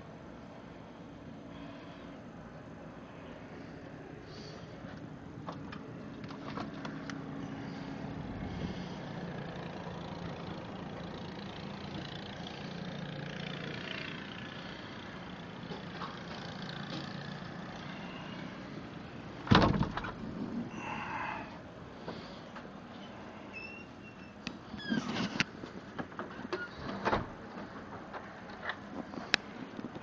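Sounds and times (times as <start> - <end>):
motor engine humming: 4.7 - 21.0
loud sharp thump: 19.5 - 20.1.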